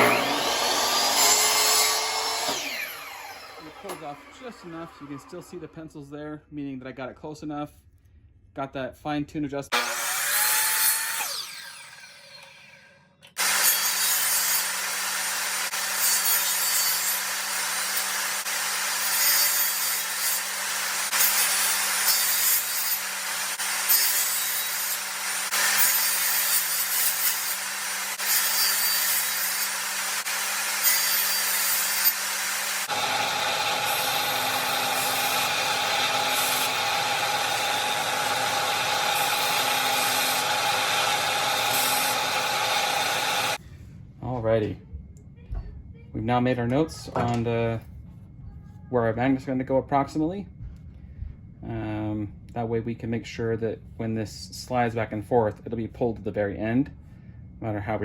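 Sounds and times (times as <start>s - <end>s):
woodworking tool motor hum: 0.0s - 5.6s, 9.7s - 43.6s
rasping strokes on wood: 15.0s - 43.6s.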